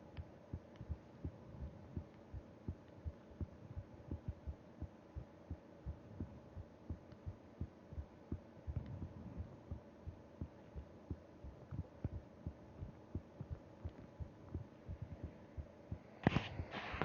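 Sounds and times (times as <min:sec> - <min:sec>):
heartbeat thumps: 0:00.0 - 0:17.0
rustling noise: 0:16.2 - 0:17.0.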